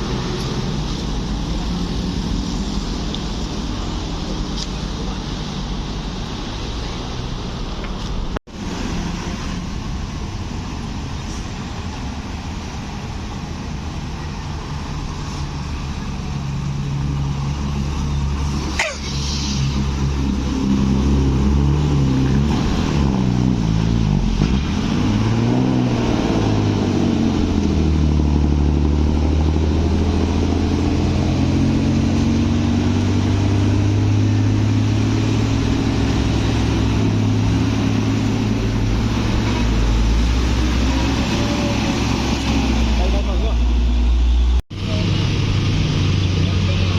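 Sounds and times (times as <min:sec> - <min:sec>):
heavy vehicle engine revving: 0:14.4 - 0:46.9.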